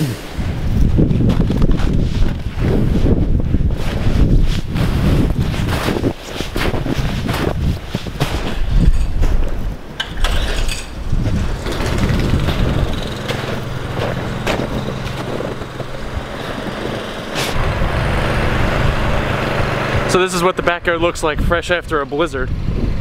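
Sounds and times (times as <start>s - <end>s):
motor humming: 11.2s - 20.2s.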